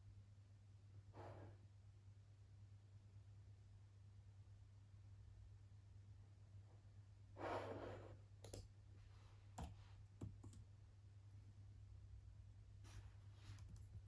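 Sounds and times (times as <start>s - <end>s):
faint low hum: 0.0s - 14.0s
computer mouse clicking: 8.4s - 8.7s, 9.6s - 10.7s.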